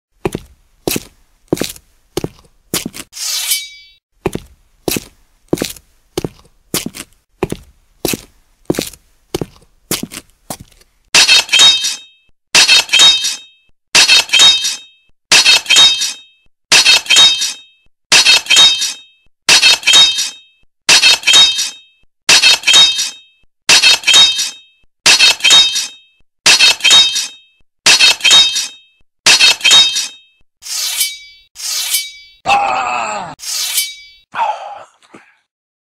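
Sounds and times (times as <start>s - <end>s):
metal clashing strikes: 3.2s - 4.0s, 11.2s - 32.4s, 33.5s - 34.3s.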